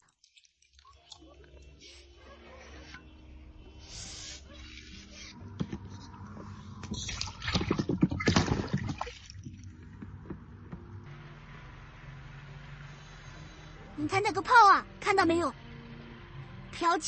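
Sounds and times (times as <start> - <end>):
fish splashing in water: 6.8 - 9.7.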